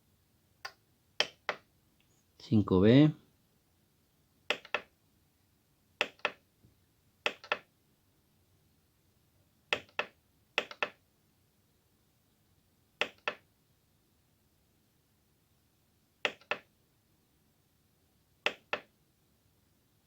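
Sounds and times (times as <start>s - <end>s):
keyboard button clicks: 4.5s - 4.9s, 7.3s - 7.7s, 13.0s - 13.4s, 16.2s - 16.7s, 18.5s - 18.9s.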